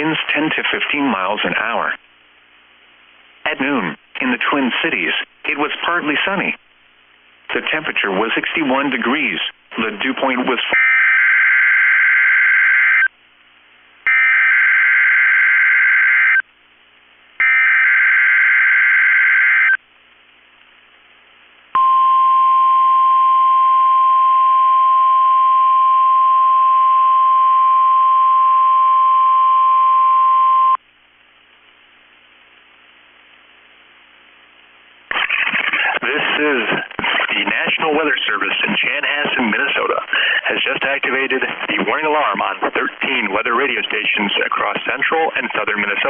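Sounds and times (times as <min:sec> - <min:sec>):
steady warning alarm tone: 0:14.1 - 0:16.4, 0:17.4 - 0:19.8.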